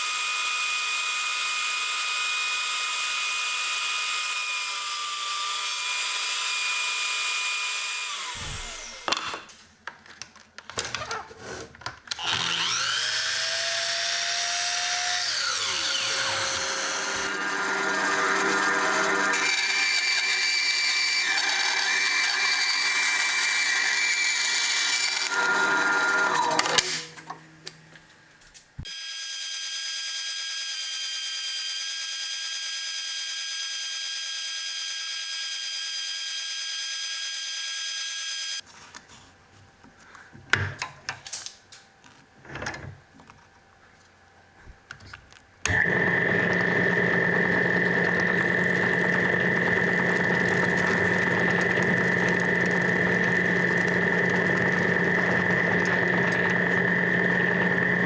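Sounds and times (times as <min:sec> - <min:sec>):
electric power tool whining: 0:00.1 - 0:09.5, 0:12.1 - 0:27.2, 0:45.6 - 0:58.0.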